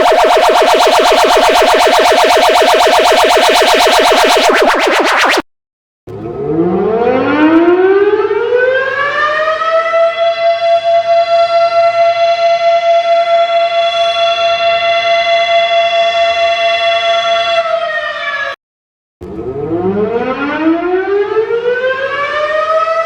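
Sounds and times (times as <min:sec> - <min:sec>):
tornado siren wailing: 0:00.0 - 0:05.4.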